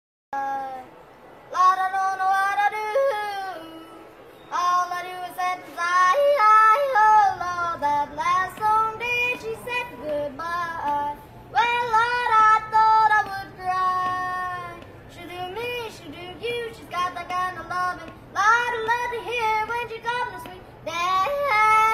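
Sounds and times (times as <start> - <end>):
boy yodeling: 0.4 - 0.9, 1.5 - 21.9.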